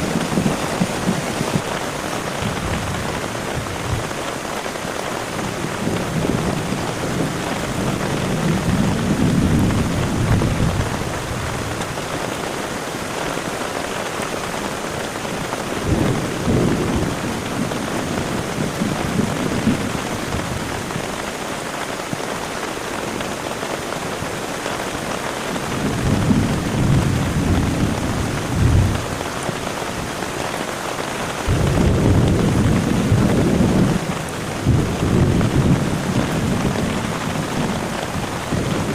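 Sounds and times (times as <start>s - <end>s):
thunder rumbling: 0.0s - 4.5s, 5.2s - 12.2s, 15.4s - 21.4s, 25.5s - 30.5s, 31.1s - 38.9s
heavy rain: 0.0s - 38.9s.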